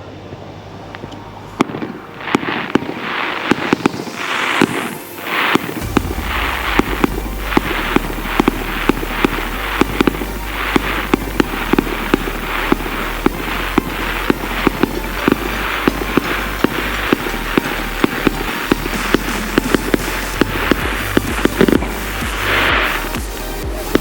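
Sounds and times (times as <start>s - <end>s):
fireworks going off: 0.1s - 24.0s
music with steady beat: 1.0s - 24.0s
deep bass line: 5.2s - 24.0s.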